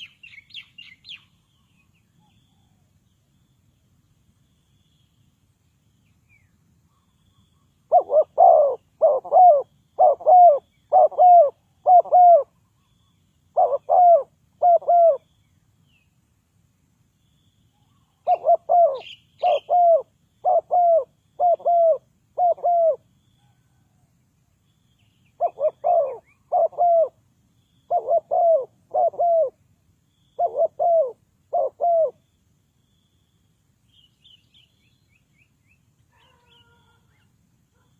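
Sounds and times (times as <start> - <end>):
small bird chirping faintly: 0.0 - 37.9
dove cooing: 7.9 - 12.6, 13.6 - 15.3, 18.2 - 23.9, 25.4 - 27.2, 27.9 - 29.6, 30.4 - 32.2.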